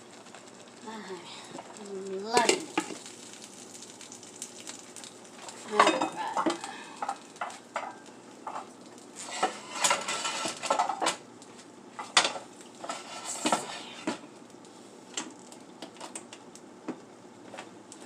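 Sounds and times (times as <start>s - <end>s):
kitchen utensils clinking: 5.7s - 8.6s.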